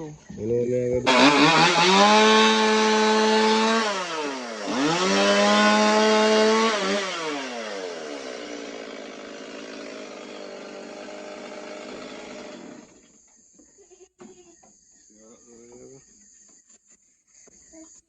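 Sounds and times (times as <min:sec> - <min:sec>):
chainsaw revving and idling: 0:01.0 - 0:13.0.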